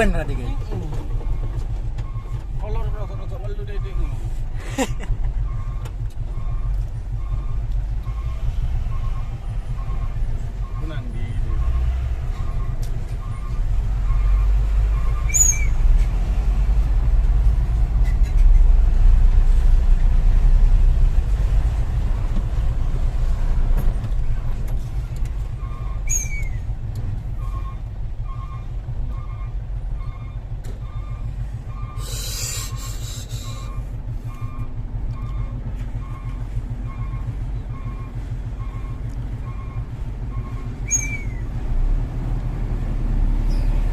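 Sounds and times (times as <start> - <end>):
brake squeals: 0.0 - 19.6, 21.2 - 43.9
diesel truck engine running: 0.0 - 43.9
reversing beeper: 5.5 - 15.7
air-brake hiss: 32.0 - 33.8.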